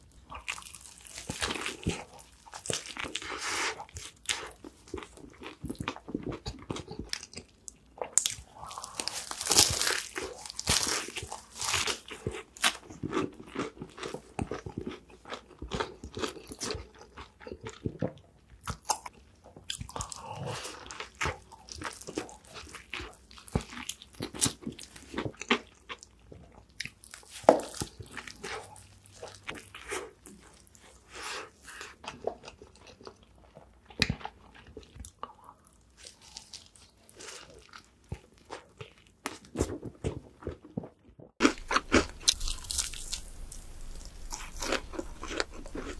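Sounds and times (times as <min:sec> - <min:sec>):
crunchy bites of fried chicken: 0:00.3 - 0:33.2, 0:41.4 - 0:45.9
wet chewing: 0:41.4 - 0:45.9.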